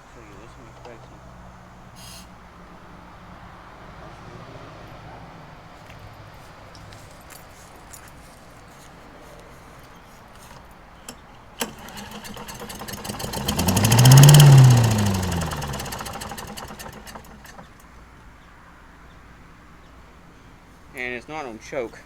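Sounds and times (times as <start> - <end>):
small engine pull-started surging: 10.4 - 17.8.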